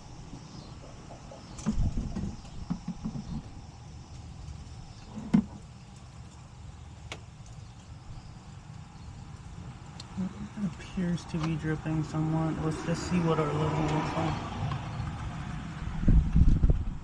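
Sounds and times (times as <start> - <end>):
steady low hum: 0.0 - 13.9
low knocks and clatter: 1.6 - 3.6.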